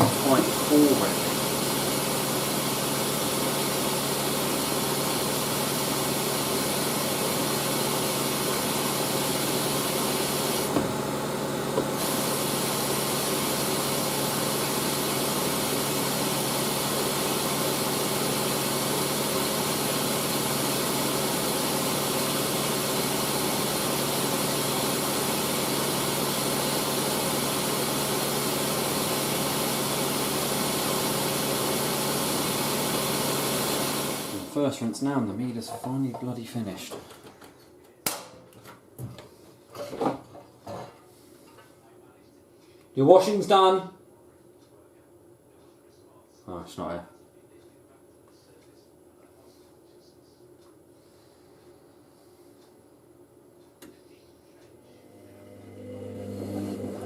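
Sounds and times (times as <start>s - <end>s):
water rushing through inlet valve: 11.7s - 34.5s.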